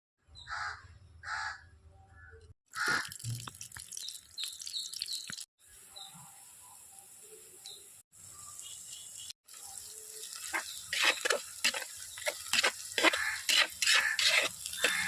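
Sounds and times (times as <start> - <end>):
crow cawing: 0.5 - 1.6, 13.0 - 14.2, 14.8 - 15.0
birdsong with chirps: 4.0 - 13.4.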